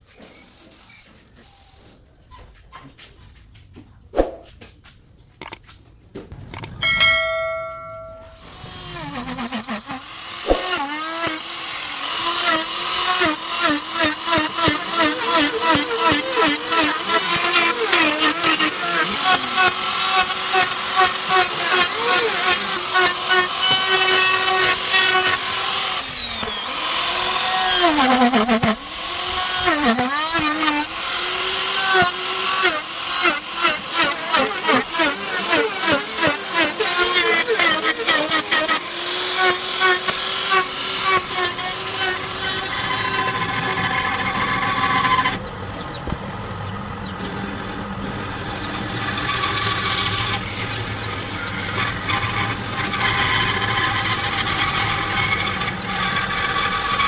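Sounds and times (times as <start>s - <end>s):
clicks and knocks from handling tools: 4.6s - 5.8s
metal object struck ringing: 6.7s - 8.5s
power tool motor whining: 7.9s - 57.0s.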